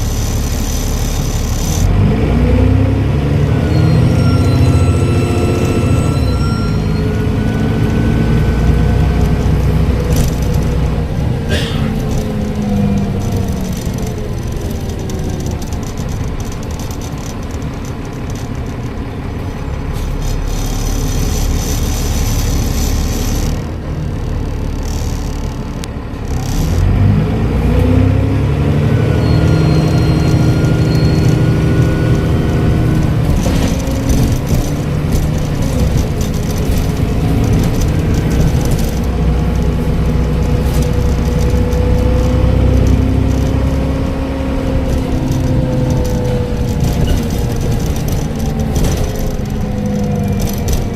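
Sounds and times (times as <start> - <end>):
bus diesel engine accelerating: 0.0 - 50.9
turbocharger whistle: 3.4 - 9.2, 28.9 - 32.9.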